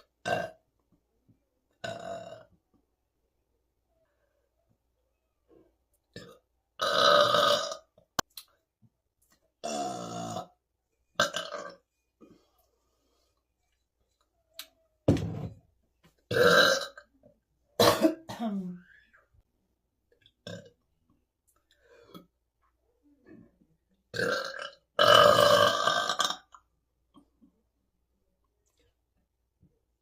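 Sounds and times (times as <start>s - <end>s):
woman burping: 6.2s - 7.8s, 16.3s - 17.0s, 17.8s - 18.8s, 24.1s - 26.4s.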